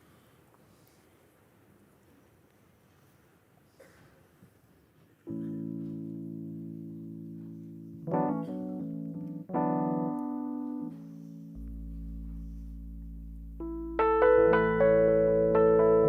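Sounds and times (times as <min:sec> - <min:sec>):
piano chords: 0:05.3 - 0:16.0.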